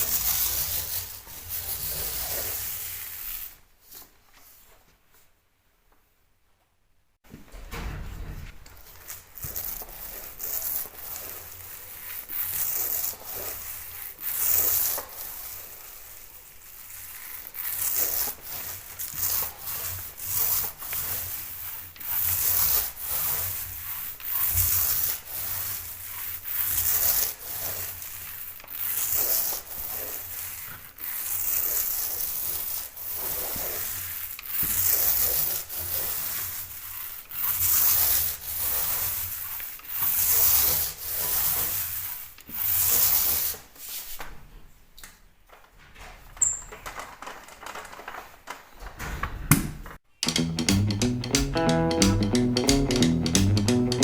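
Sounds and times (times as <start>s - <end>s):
sandpaper rubbing filler: 0.0s - 4.7s.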